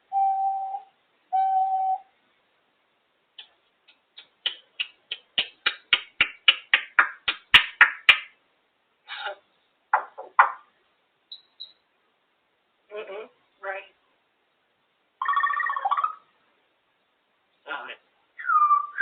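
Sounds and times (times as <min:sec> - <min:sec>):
parrot whistling: 0:00.1 - 0:02.1, 0:11.3 - 0:11.8, 0:18.4 - 0:19.0
parrot clicking and chirping: 0:03.4 - 0:06.1, 0:15.2 - 0:16.2.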